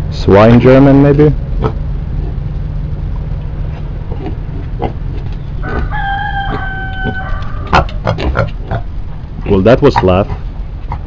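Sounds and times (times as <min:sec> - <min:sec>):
pig grunts: 0:03.7 - 0:05.9, 0:07.1 - 0:11.0
rooster crowing: 0:05.4 - 0:08.1.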